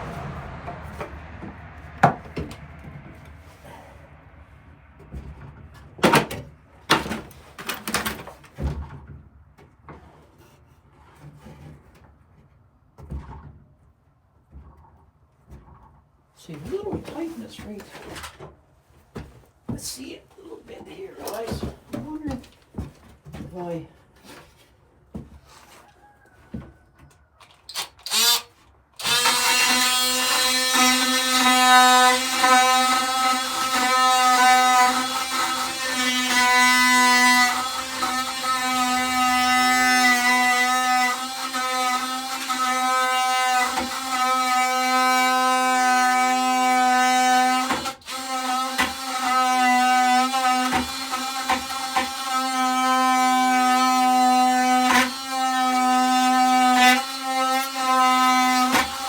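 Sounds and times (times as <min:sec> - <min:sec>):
drill clicks: 0:27.4 - 0:30.7
power drill motor running: 0:27.7 - 0:36.6.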